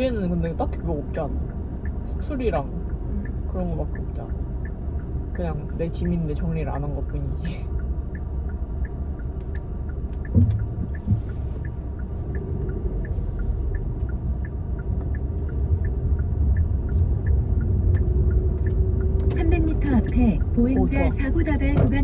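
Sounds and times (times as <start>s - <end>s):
car road and engine rumble: 0.0s - 22.0s
light ticking: 0.0s - 22.0s
short low thumps: 8.1s - 22.0s.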